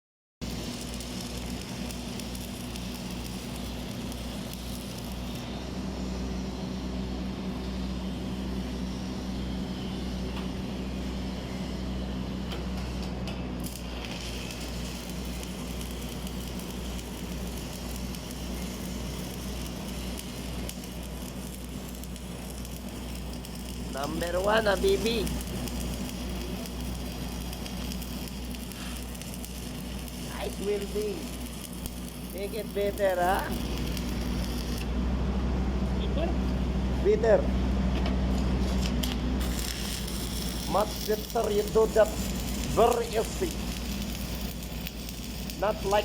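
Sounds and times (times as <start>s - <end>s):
arc welding crackling: 0.4s - 46.0s
low steady hum: 13.2s - 45.8s.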